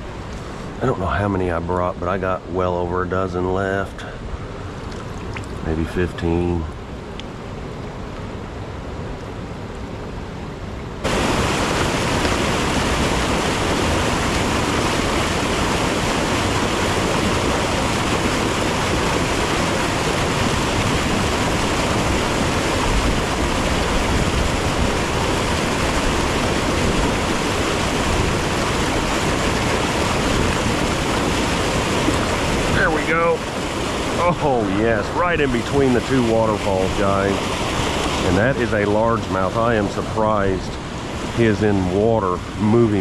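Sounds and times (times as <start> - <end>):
waterfall rushing: 11.0 - 43.0.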